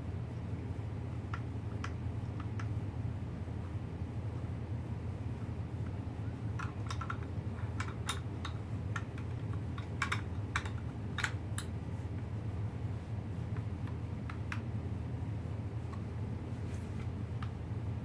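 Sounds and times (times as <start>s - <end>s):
steady low hum: 0.0s - 18.0s
light irregular clicks and taps: 1.3s - 2.8s, 6.6s - 12.3s, 13.5s - 14.7s.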